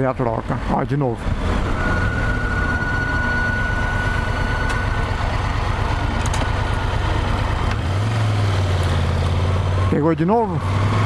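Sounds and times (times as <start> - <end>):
motorcycle engine running: 0.5 - 10.6
thin high clutch squeal: 1.7 - 5.7.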